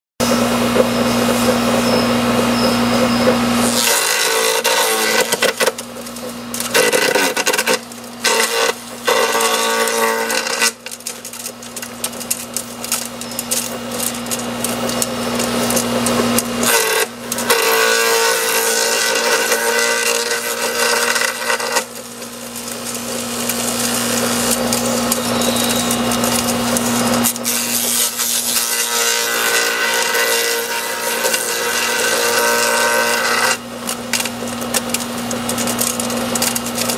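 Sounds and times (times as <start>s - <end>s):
branches grinding and crackling: 0.2s - 36.9s
garden shredder motor hum: 0.2s - 36.9s.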